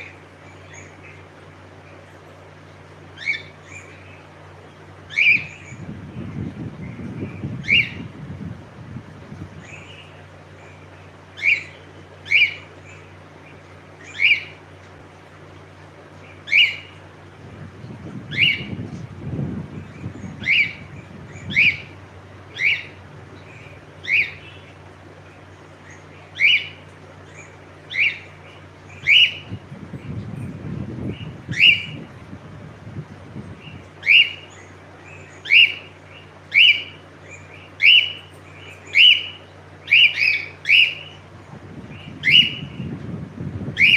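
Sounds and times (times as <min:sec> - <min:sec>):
faint low hum: 0:00.0 - 0:43.9
cockatiel chirping: 0:34.0 - 0:34.4, 0:36.5 - 0:37.0, 0:37.8 - 0:41.2.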